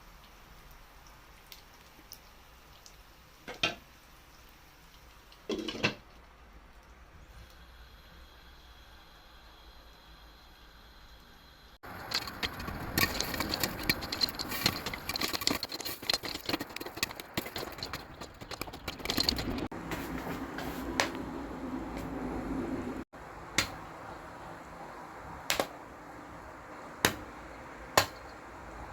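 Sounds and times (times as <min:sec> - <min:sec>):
popcorn popping: 0:11.8 - 0:19.9, 0:23.5 - 0:23.9, 0:25.4 - 0:25.8, 0:27.0 - 0:28.4.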